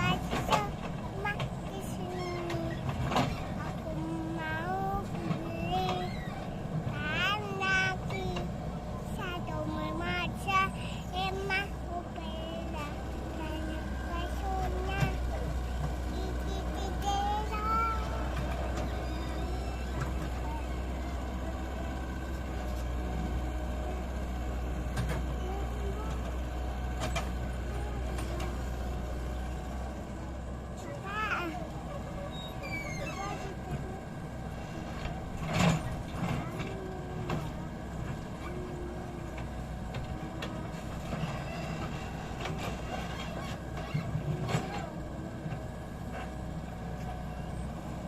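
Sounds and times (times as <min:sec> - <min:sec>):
knocks and clanks: 0:00.0 - 0:10.5
heavy diesel engine running: 0:00.0 - 0:48.0.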